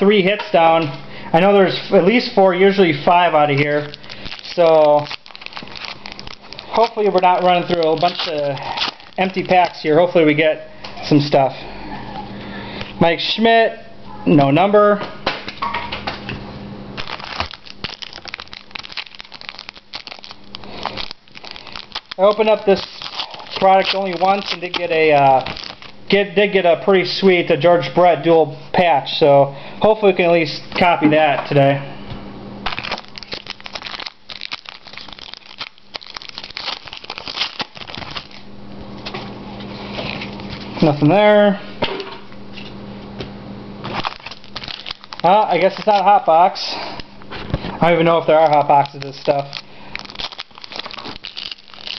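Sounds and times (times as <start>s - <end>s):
faint steady hum: 0.0s - 51.9s
card wrappers crinkling: 2.0s - 10.4s, 17.0s - 26.3s, 32.7s - 41.0s, 43.8s - 51.9s
cards being handled: 3.2s - 9.8s, 17.0s - 25.9s, 32.7s - 38.4s, 43.9s - 46.4s, 48.3s - 51.9s.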